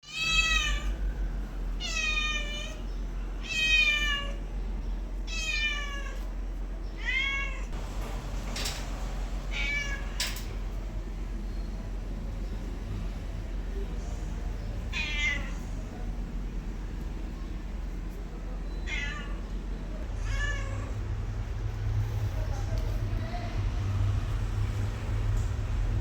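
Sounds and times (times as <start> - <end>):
cat meowing: 0.0 - 1.0, 1.8 - 2.8, 3.4 - 4.4, 5.3 - 6.2, 7.0 - 7.8, 9.5 - 10.2, 14.9 - 15.8, 18.7 - 21.0.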